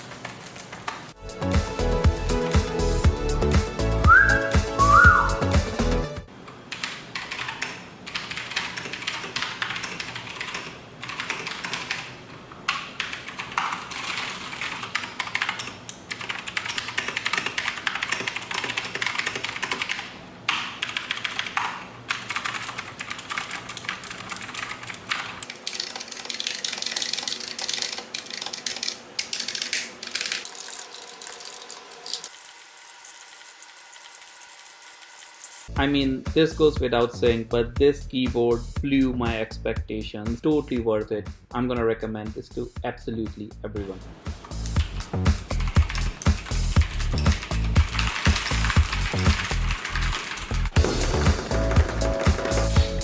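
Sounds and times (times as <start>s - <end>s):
mechanical keyboard typing: 6.8s - 12.1s, 12.7s - 32.1s, 45.5s - 50.6s.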